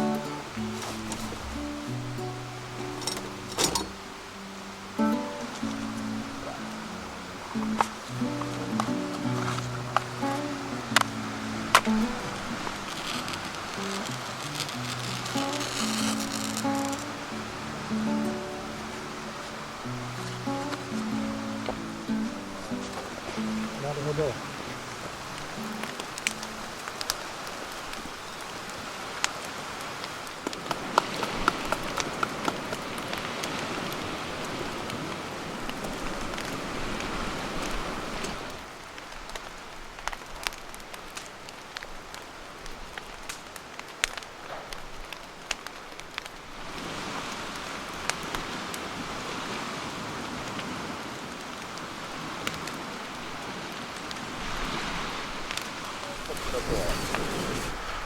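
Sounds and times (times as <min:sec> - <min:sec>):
campfire crackling and popping: 0:00.0 - 0:58.0.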